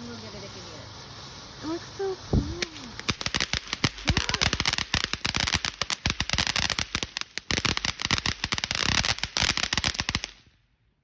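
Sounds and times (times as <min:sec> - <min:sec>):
firework crackling bangs: 0:00.0 - 0:10.6.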